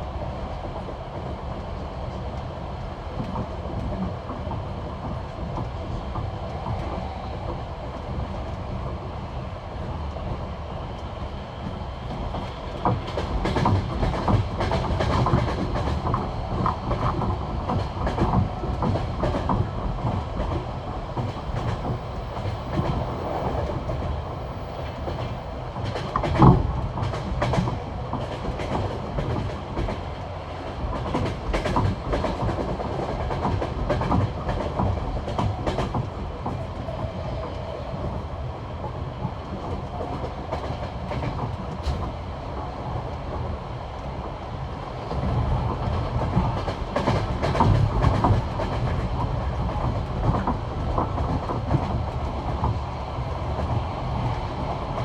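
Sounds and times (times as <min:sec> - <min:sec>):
steady train rumble: 0:00.0 - 0:55.0
train wheels clacking over rail joints: 0:12.8 - 0:30.1, 0:45.2 - 0:52.8.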